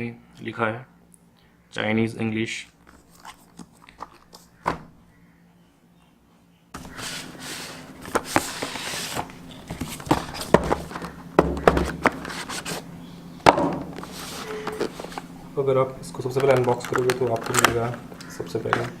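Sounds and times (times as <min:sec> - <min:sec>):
packaging rustling and scraping: 0:02.8 - 0:04.6, 0:06.8 - 0:12.9, 0:13.9 - 0:15.4, 0:16.2 - 0:19.0.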